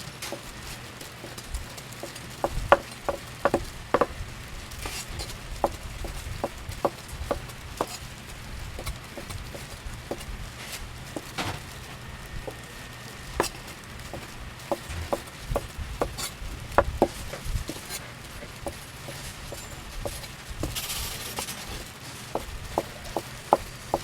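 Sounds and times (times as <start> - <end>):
knife chopping on wooden board: 1.1 - 4.2, 4.8 - 8.0, 8.8 - 10.3, 13.3 - 24.0.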